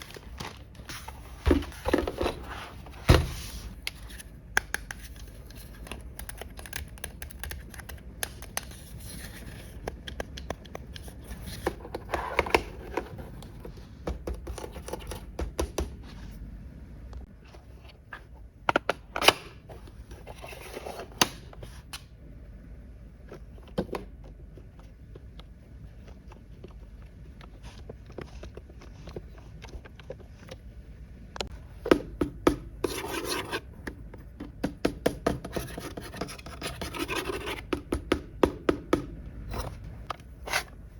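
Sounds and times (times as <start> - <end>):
packaging rustling and scraping: 0.0 - 4.3.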